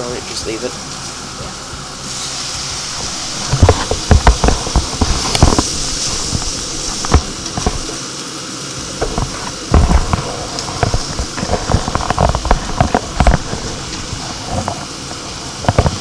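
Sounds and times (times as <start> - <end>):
meat sizzling in a frying pan: 0.0 - 16.0
sharp knocks and clatters: 2.9 - 8.0, 8.9 - 16.0.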